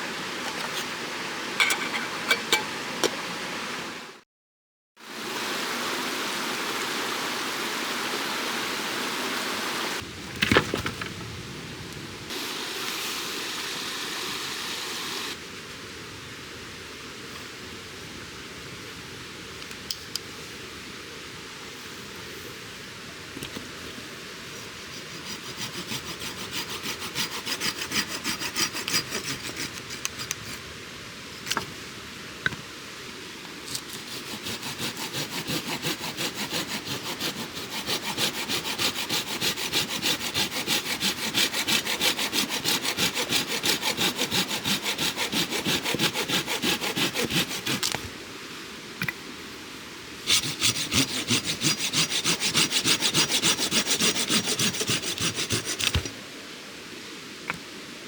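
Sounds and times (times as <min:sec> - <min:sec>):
hand saw cutting wood: 0:24.9 - 0:30.6, 0:33.7 - 0:48.0, 0:50.3 - 0:56.1.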